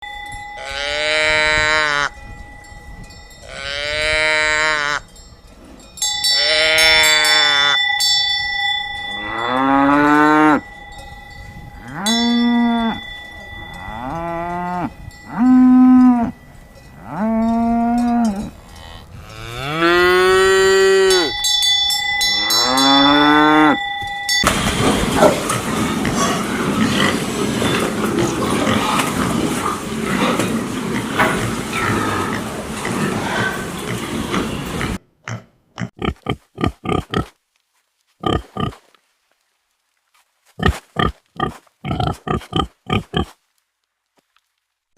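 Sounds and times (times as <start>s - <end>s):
steady ringing tone: 0.0s - 0.9s, 2.1s - 3.5s, 7.8s - 16.9s, 21.2s - 24.5s
cows mooing: 0.6s - 2.2s, 3.4s - 5.0s, 6.4s - 7.8s, 9.1s - 10.6s, 13.7s - 16.4s, 17.0s - 21.4s, 22.4s - 23.8s, 25.0s - 35.0s.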